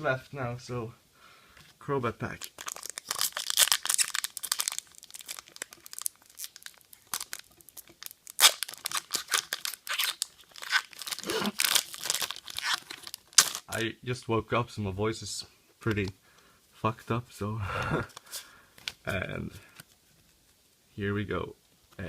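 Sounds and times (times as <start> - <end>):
foil wrapper tearing and crinkling: 2.4 - 13.7.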